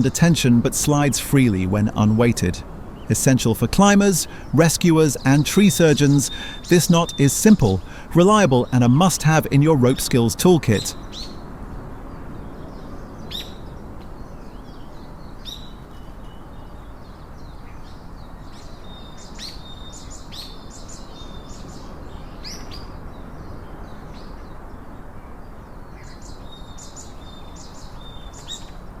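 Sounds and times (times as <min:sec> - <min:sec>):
birds chirping: 0:00.0 - 0:29.0
low background hiss: 0:00.0 - 0:29.0.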